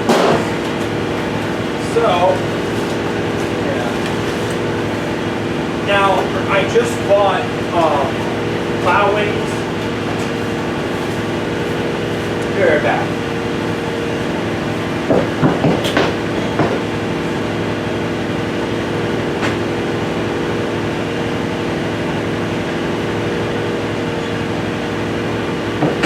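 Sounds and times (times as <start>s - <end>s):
knocks and clanks: 0.0s - 1.5s, 15.0s - 16.9s
air compressor humming: 0.0s - 26.0s.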